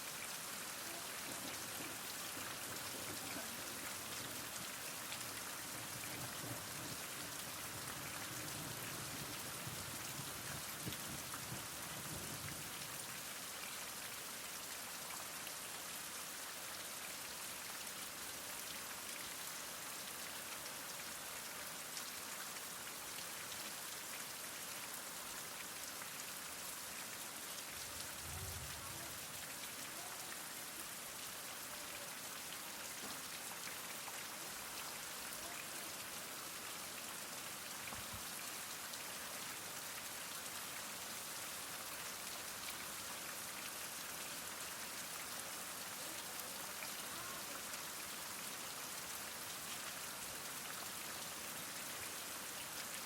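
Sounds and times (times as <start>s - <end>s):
heavy rain: 0.0s - 53.0s.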